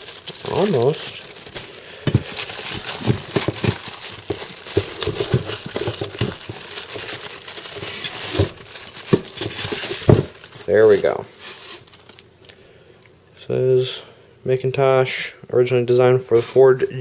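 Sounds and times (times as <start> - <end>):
packaging crinkling and rustling: 0.0 - 12.3.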